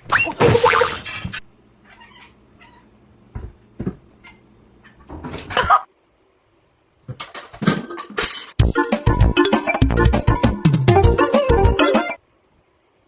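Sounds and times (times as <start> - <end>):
cat meowing: 1.8 - 2.9.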